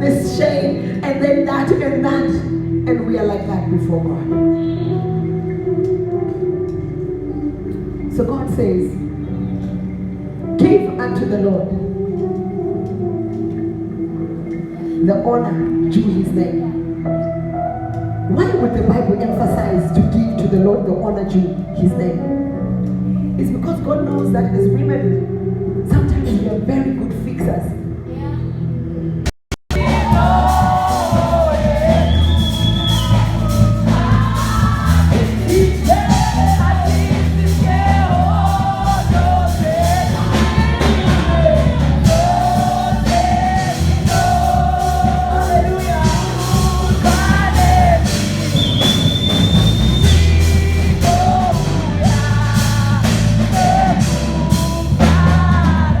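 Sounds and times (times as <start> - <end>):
heavy bass line: 11.8 - 56.0
person singing: 29.7 - 49.4, 50.0 - 56.0.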